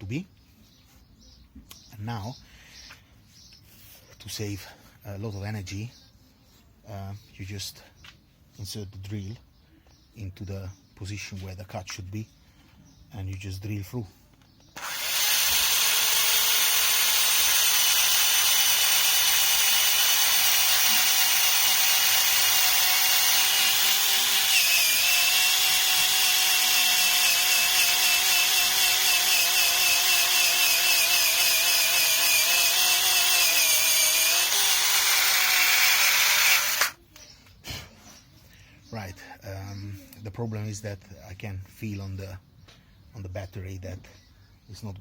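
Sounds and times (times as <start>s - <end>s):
drill boring through wood: 14.8s - 37.0s.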